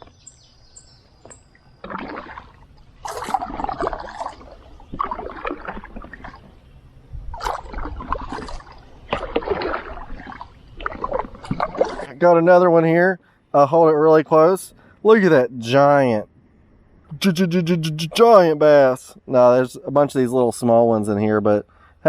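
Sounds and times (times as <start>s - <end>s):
water splashing around a kayak: 1.2s - 13.0s.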